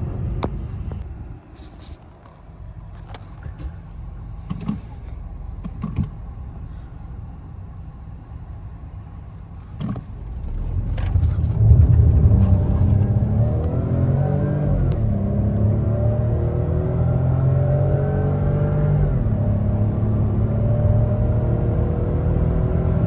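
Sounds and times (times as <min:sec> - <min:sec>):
car engine running and accelerating: 0:00.0 - 0:23.0
engine knocks: 0:09.6 - 0:14.3.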